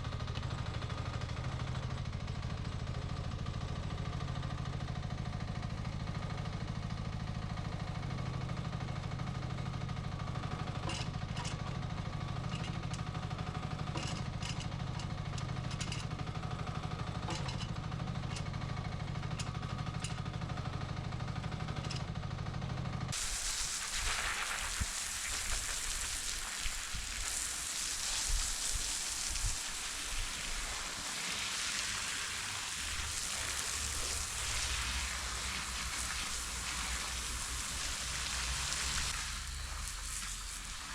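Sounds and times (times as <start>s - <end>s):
steady broad hiss: 23.2s - 40.9s
excavator engine running: 28.8s - 40.5s.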